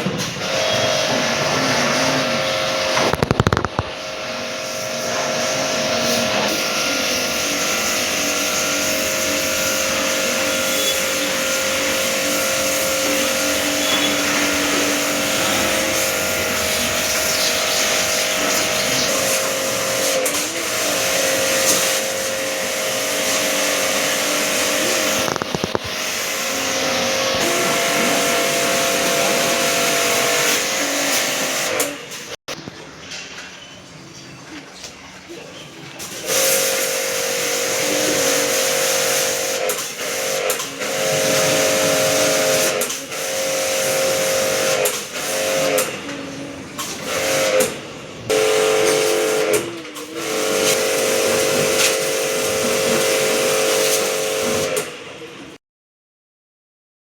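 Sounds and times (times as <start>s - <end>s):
pressure washer motor whine: 0.0s - 32.4s, 36.2s - 55.5s
water spray hiss: 4.6s - 31.9s.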